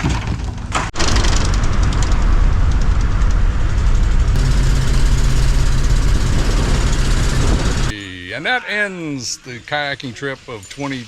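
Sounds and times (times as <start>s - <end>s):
vehicle engine humming: 2.9s - 7.9s
loud rushing noise: 4.4s - 7.9s.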